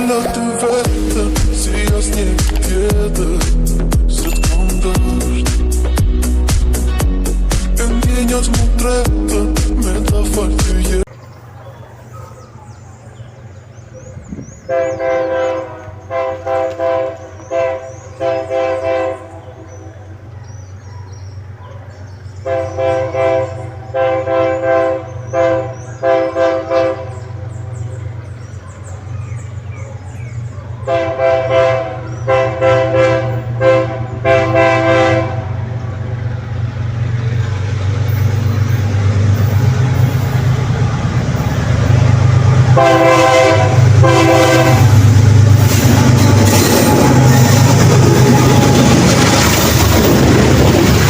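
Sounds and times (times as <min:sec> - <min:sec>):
diesel locomotive engine running: 0:00.0 - 0:51.0
locomotive air horn blasts: 0:14.7 - 0:20.0, 0:22.4 - 0:27.4, 0:30.8 - 0:35.7, 0:42.5 - 0:45.1, 0:45.7 - 0:49.1.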